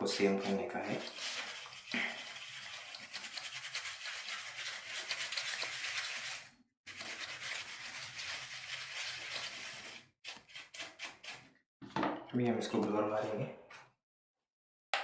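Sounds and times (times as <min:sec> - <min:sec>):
brush scrubbing fan blades: 0:00.0 - 0:11.4.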